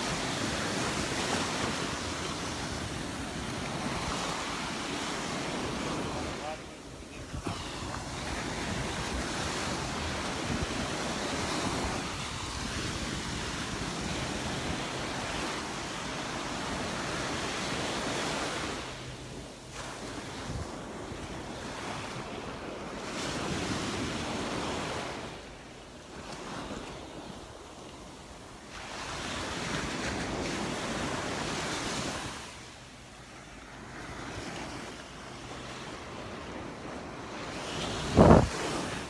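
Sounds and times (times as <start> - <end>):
surf breaking on beach: 0.0 - 25.4, 33.8 - 39.0
wind buffeting microphone: 36.1 - 39.0.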